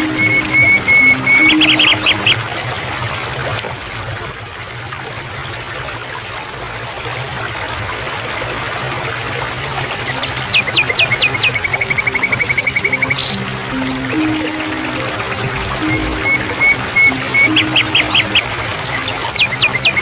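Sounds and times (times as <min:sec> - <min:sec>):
bird whistling: 0:00.0 - 0:02.4, 0:10.5 - 0:20.0
water trickling: 0:00.0 - 0:04.3, 0:05.0 - 0:20.0.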